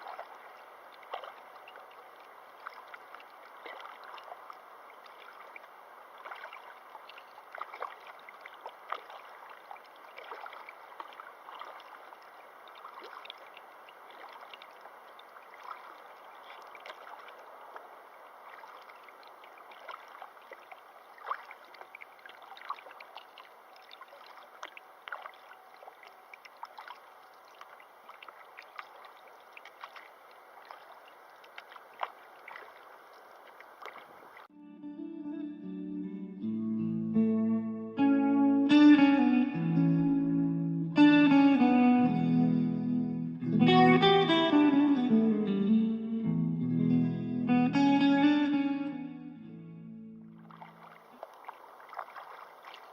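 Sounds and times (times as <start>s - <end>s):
river water rushing: 0.0s - 34.5s, 50.4s - 52.9s.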